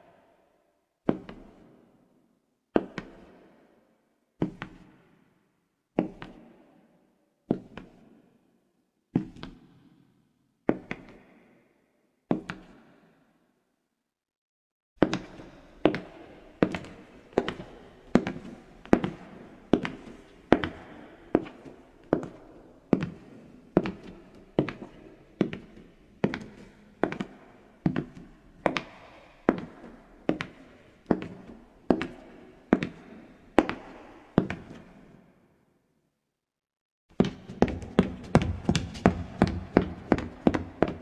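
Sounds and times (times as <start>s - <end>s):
footsteps on wooden floor: 15.9s - 33.9s, 37.2s - 41.0s.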